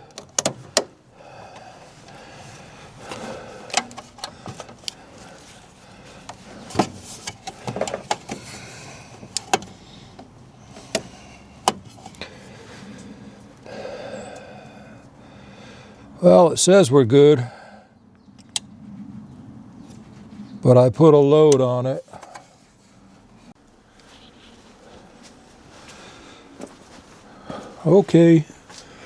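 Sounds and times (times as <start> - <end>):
battery tester clamps clicking: 0.0 - 0.9, 3.6 - 5.0, 9.2 - 12.2.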